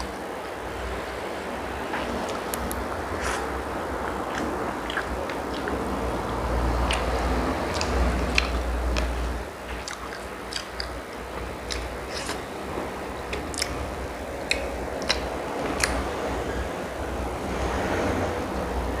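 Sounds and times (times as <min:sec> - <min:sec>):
low background rumble: 0:00.0 - 0:19.0
person biting and chewing: 0:04.3 - 0:05.8, 0:06.8 - 0:12.4, 0:13.3 - 0:13.8, 0:14.4 - 0:16.0.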